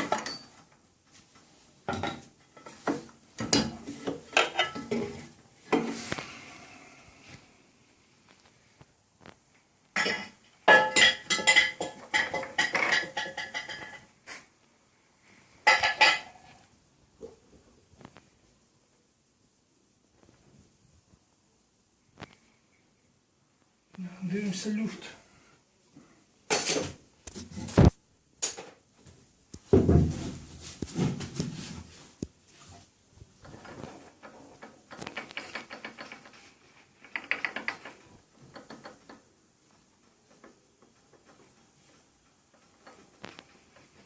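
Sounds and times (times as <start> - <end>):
metal tools clinking and clanking: 0.0 - 0.6, 10.0 - 14.1.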